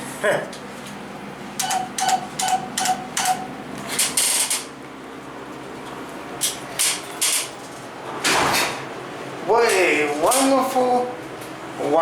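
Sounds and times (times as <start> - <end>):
elevator chime beeps: 1.6 - 3.5.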